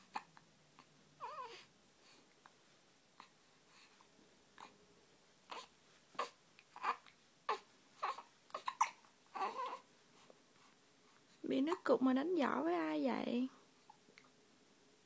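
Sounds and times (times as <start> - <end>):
baby crying: 1.2 - 1.7, 5.5 - 9.8
baby hiccuping: 5.5 - 9.8.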